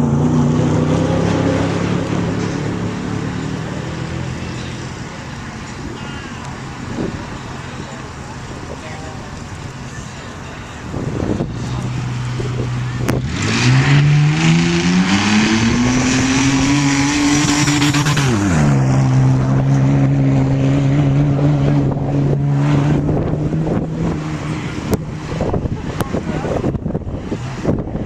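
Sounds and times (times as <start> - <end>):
off-road vehicle engine pulling away: 0.0 - 5.3, 11.0 - 28.0.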